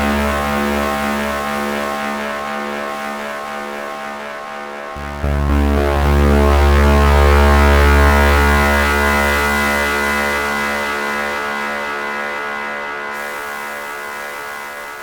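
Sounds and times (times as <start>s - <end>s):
deep bass note: 0.0s - 2.8s, 5.0s - 11.3s
synthesizer drone: 0.0s - 15.0s.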